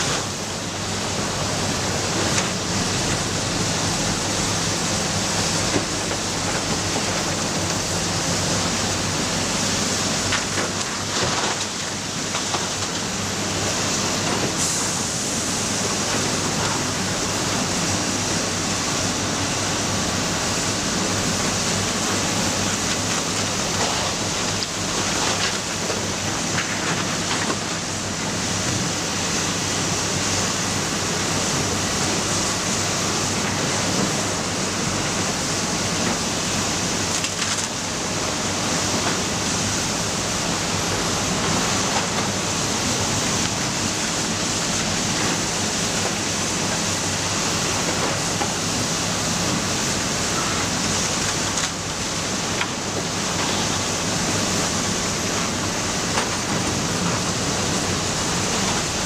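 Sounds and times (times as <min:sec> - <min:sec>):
loud hiss: 0:14.1 - 0:23.4.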